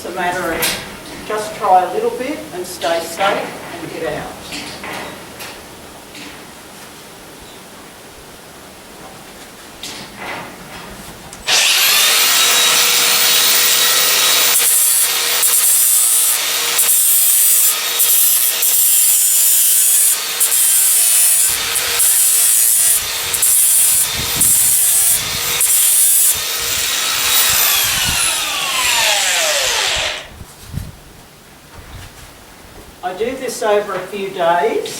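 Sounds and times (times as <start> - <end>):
power grinder whining: 11.4 - 30.3
grinder grinding hoof: 11.4 - 30.4.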